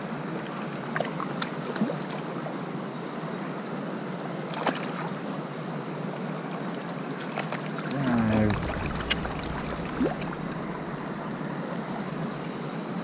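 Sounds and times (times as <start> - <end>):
river water flowing: 4.1 - 13.0.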